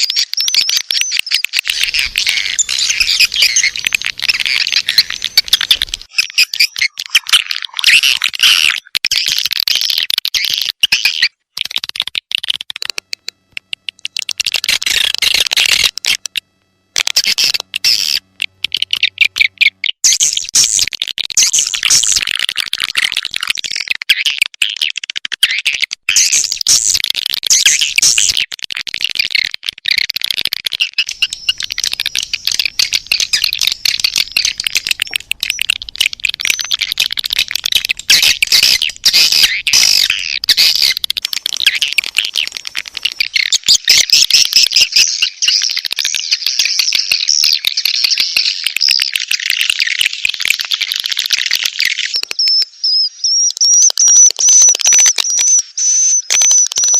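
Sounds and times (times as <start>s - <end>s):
swiftlets twittering chirps: 0.0s - 9.4s, 12.4s - 22.2s, 30.8s - 48.9s, 51.9s - 56.9s.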